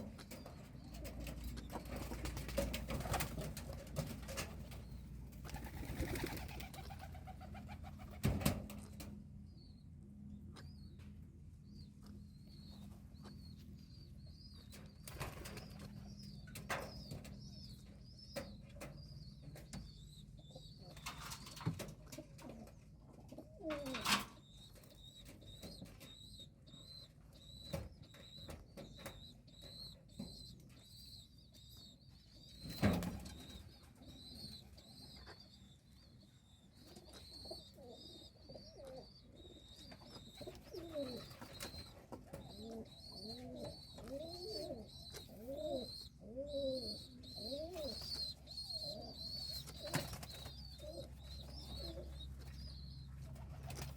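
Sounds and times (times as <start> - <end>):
pigeon cooing: 0.0 - 8.4, 23.3 - 24.3, 36.9 - 53.9.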